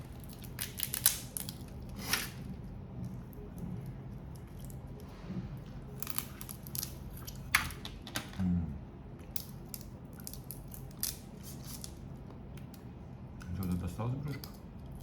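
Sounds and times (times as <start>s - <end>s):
shellfish shells cracking: 0.0s - 2.4s, 6.0s - 8.4s, 9.2s - 12.8s.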